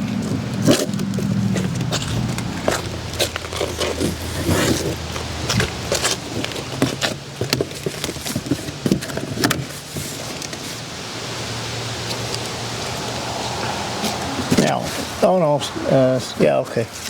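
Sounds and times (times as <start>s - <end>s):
low hum: 0.0s - 5.9s, 11.0s - 16.0s.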